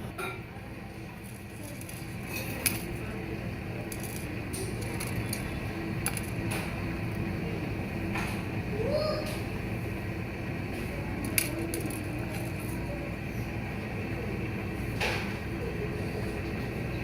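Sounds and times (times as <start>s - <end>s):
low background hum: 0.0s - 17.0s
clinks of kitchen items: 1.3s - 2.9s.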